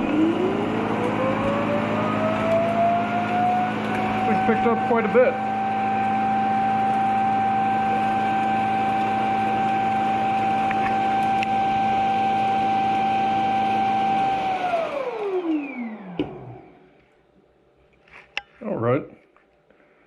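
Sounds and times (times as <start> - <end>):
vacuum suction motor whining: 0.0 - 17.0.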